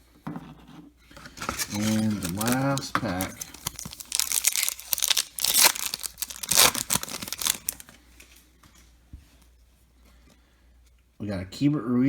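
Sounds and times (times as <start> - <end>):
wrapper tearing and crinkling: 1.1 - 8.0.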